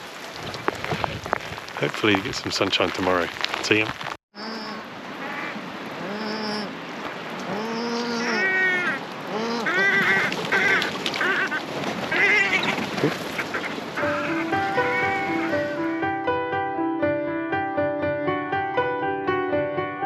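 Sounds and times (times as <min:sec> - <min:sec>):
rain hiss: 0:00.0 - 0:15.9
birds short harsh calls: 0:07.9 - 0:15.6
music: 0:14.0 - 0:20.0.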